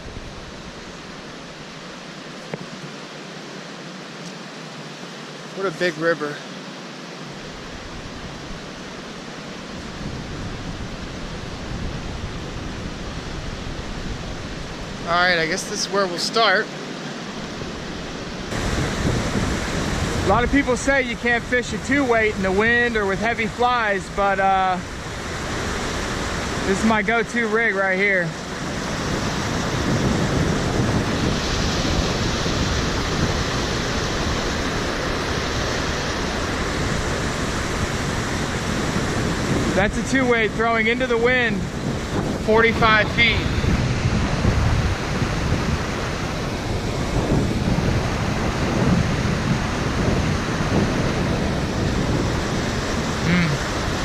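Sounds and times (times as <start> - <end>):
wind rumbling on microphone: 0.0 - 2.9, 7.3 - 15.6, 17.2 - 27.4, 28.1 - 54.0
river rushing: 0.0 - 54.0.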